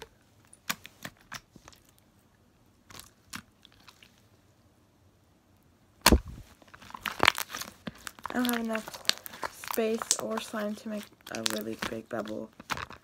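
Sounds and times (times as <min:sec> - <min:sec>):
slime clicking and popping: 0:06.8 - 0:13.0.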